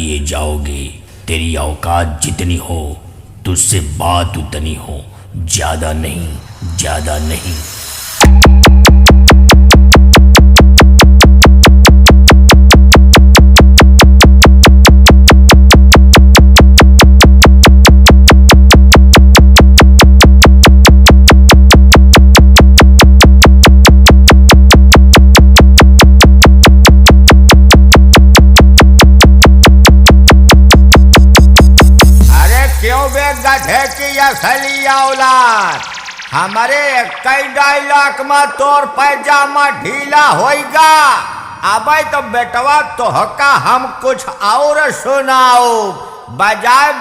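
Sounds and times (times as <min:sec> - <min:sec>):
pulsing electronic bass beat: 0:06.4 - 0:38.3.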